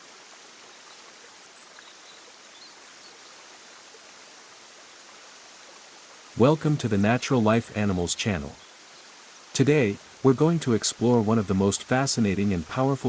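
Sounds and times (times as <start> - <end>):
stream flowing: 0.0 - 13.0
faint bird chirps: 0.6 - 3.4.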